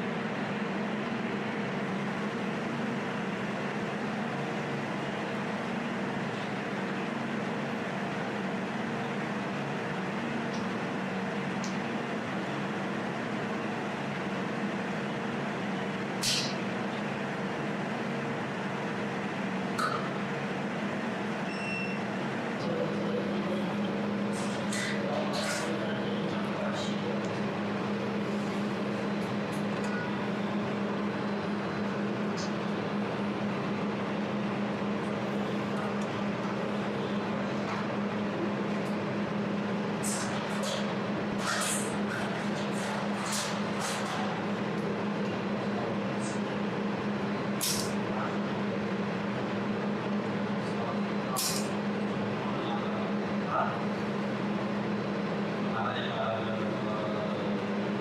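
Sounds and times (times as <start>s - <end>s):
fan and pump humming: 0.0s - 58.0s.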